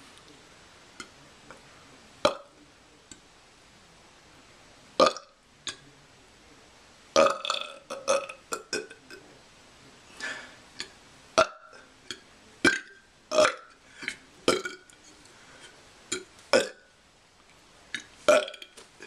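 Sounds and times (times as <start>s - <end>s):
person burping: 2.2s - 2.5s, 5.0s - 5.3s, 7.2s - 9.0s, 12.7s - 14.9s, 16.1s - 16.9s, 18.3s - 18.7s.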